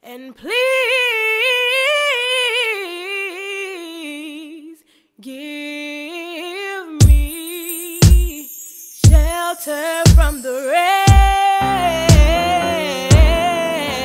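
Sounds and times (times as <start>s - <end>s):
woman singing gospel unaccompanied: 0.0s - 14.0s
backing music: 11.1s - 14.0s.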